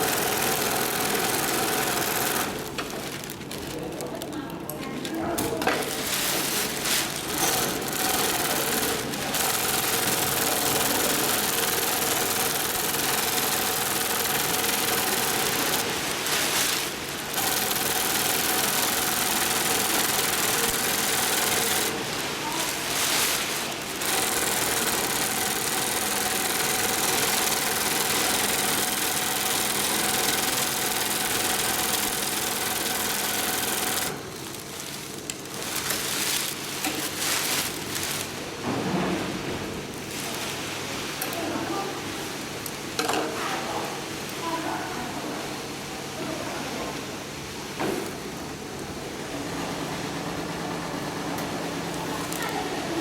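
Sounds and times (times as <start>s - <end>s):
industrial sewing machine running: 0.0s - 3.3s, 5.6s - 38.4s.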